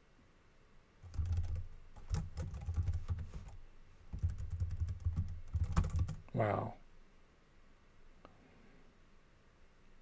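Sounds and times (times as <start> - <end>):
computer keyboard typing: 1.0 - 6.3.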